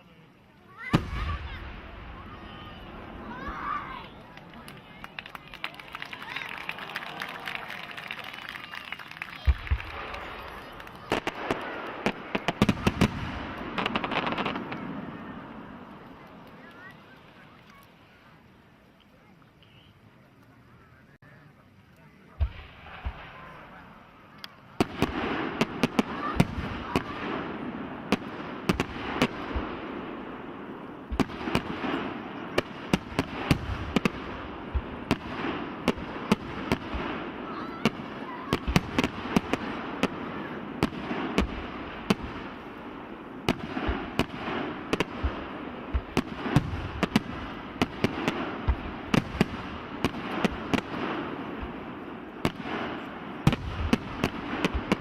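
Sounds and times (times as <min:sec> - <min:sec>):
fireworks crackle: 0:00.0 - 0:55.0
fireworks bangs: 0:00.7 - 0:18.2, 0:22.2 - 0:55.0.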